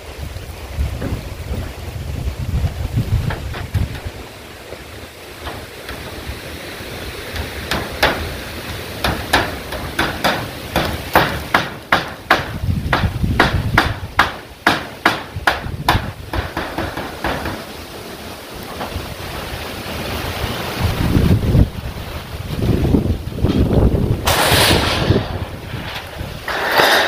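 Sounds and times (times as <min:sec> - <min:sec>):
wind rumbling on microphone: 0:00.0 - 0:27.0
hammer driving nails into metal sheets: 0:05.4 - 0:06.3, 0:07.3 - 0:17.7, 0:24.2 - 0:27.0.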